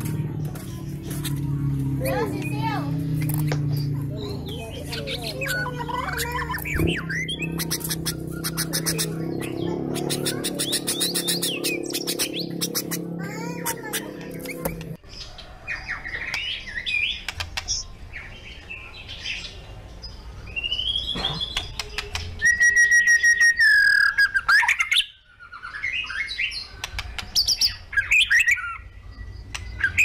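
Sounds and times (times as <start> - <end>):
bird singing chirps and whistles: 2.0 - 13.1, 20.4 - 30.0.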